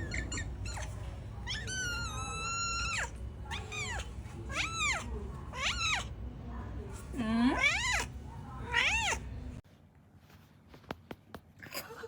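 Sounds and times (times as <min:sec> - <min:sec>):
cat meowing: 0:00.0 - 0:06.1, 0:07.6 - 0:09.2.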